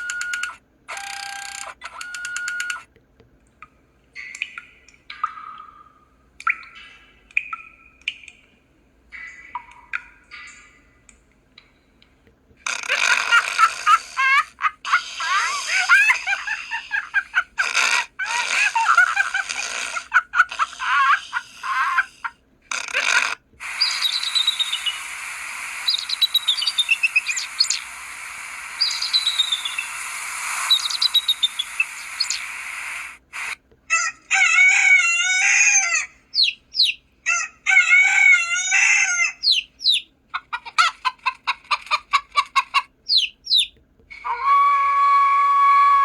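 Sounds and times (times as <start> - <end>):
steady hiss: 12.6 - 22.4, 23.0 - 33.6
birds chirping: 12.6 - 33.6, 35.5 - 43.8
chicks peeping: 12.7 - 33.5, 36.3 - 38.0, 38.7 - 43.8
rooster crowing: 33.9 - 36.1.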